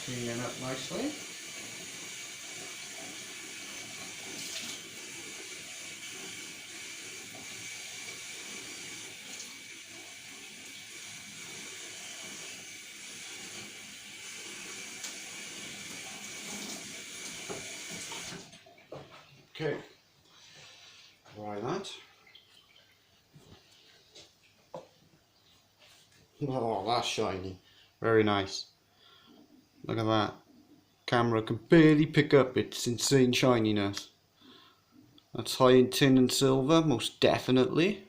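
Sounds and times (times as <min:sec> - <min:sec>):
water running from a tap: 0:00.0 - 0:18.8, 0:21.9 - 0:23.0.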